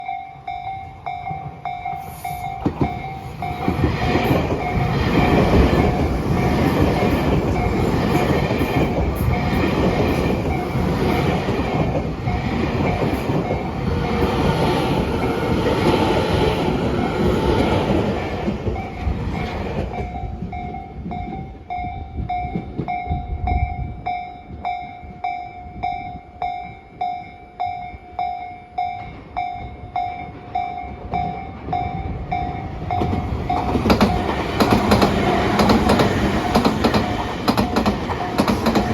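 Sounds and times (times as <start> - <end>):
crossing warning bell ringing: 0.0 - 19.2, 19.8 - 38.9
train wheels clattering over rails: 1.4 - 21.5, 32.7 - 38.9.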